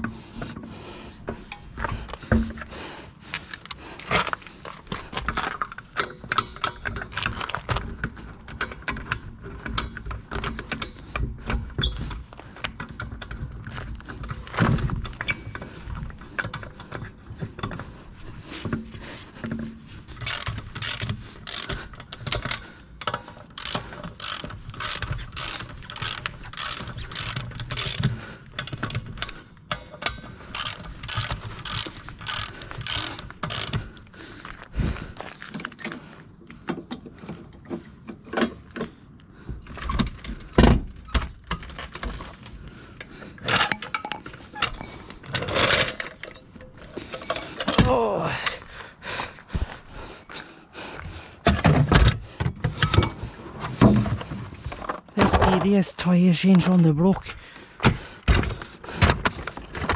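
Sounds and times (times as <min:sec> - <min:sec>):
hand ratchet clicking: 0:20.2 - 0:29.4, 0:30.4 - 0:34.1.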